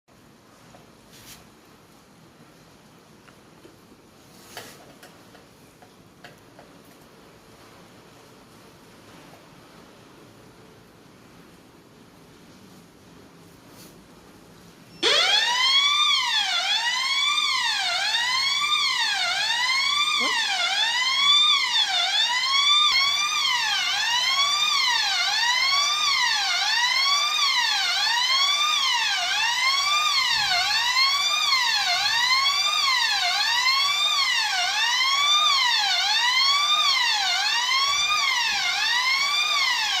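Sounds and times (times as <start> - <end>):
fire alarm sweeping tone: 14.9 - 40.0.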